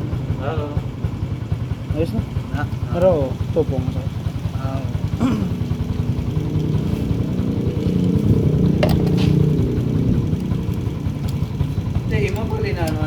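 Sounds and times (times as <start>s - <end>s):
motorcycle engine idling: 0.0s - 13.0s
sharp clicks: 8.8s - 13.0s.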